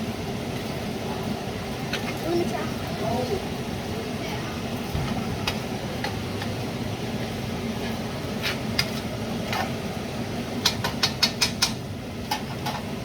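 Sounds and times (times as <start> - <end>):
sharp taps on a pan: 10.6 - 12.8
quick clicks against a pan: 10.6 - 12.9.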